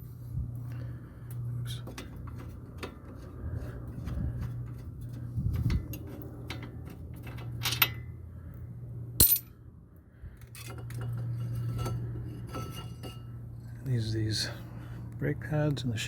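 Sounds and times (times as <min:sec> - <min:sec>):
steady low hum: 0:00.0 - 0:16.0
metal clinking and tapping: 0:09.2 - 0:09.6.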